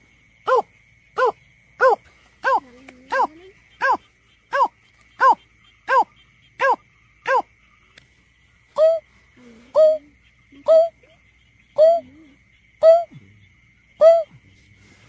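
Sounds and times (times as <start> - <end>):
bird hooting calls: 1.2 - 7.5, 9.7 - 13.1.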